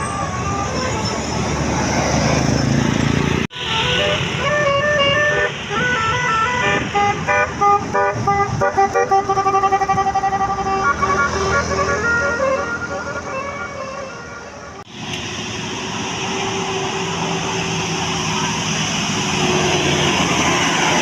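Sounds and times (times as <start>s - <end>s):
engine and road noise: 0.0s - 21.0s
musical bus horn tune: 3.5s - 14.9s, 16.2s - 18.0s, 19.3s - 21.0s.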